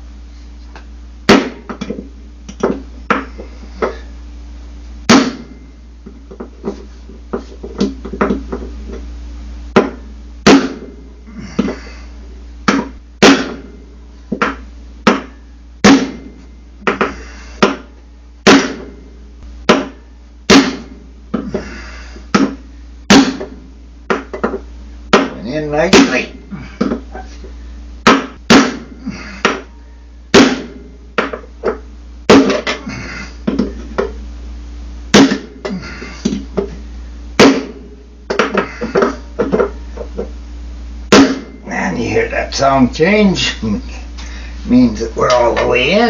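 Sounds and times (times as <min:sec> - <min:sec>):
low steady hum: 0:00.0 - 0:46.0
hammer striking metal bearing: 0:09.8 - 0:10.9, 0:12.7 - 0:13.7, 0:14.4 - 0:18.9, 0:35.2 - 0:35.5, 0:37.4 - 0:39.8, 0:41.1 - 0:41.6.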